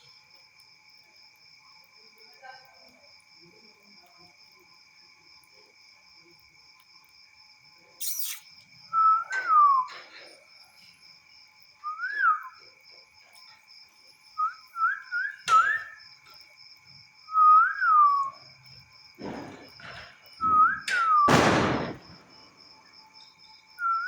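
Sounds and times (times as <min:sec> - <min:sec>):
high insect trill: 0:00.0 - 0:24.0
person whistling a melody: 0:09.0 - 0:09.9, 0:11.8 - 0:12.6, 0:14.4 - 0:15.9, 0:17.3 - 0:18.4, 0:20.5 - 0:21.3, 0:23.8 - 0:24.0
firecrackers cracking: 0:19.2 - 0:22.6.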